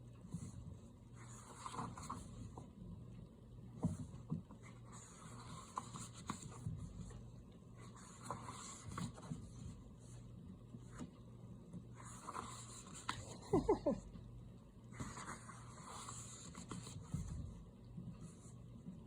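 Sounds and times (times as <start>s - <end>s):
paper pages rustling: 1.2s - 2.4s.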